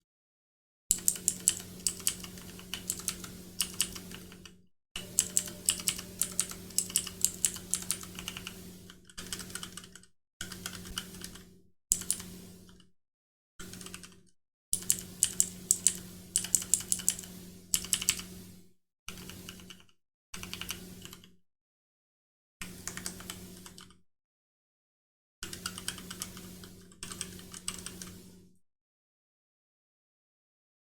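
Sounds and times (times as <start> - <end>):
low steady hum: 5.0 - 8.9.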